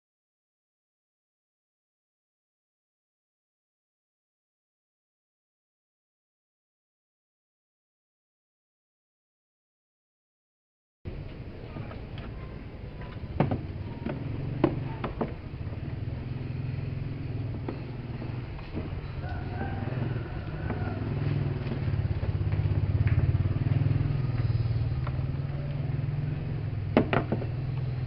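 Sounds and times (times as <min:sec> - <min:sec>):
low motor rumble: 0:11.1 - 0:28.0
sharp knocks: 0:26.9 - 0:27.6.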